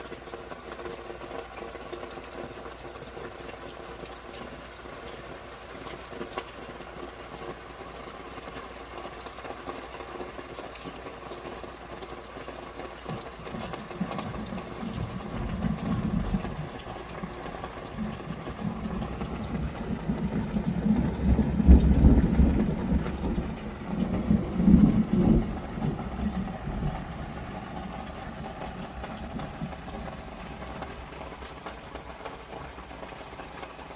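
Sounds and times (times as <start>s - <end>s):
rain pattering on tarps: 0.0s - 33.9s
thunder rumbling: 13.9s - 31.7s.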